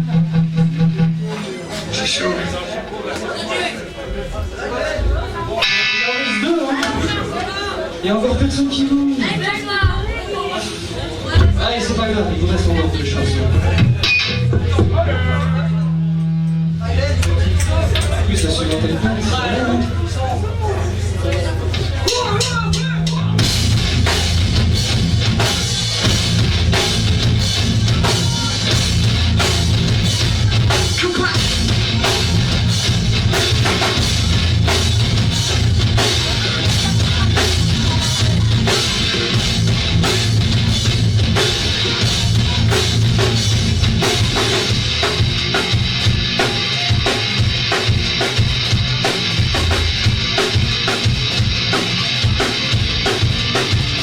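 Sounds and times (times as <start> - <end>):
heavy bass: 0.0 - 1.4, 10.9 - 54.0
live band playing: 5.2 - 54.0.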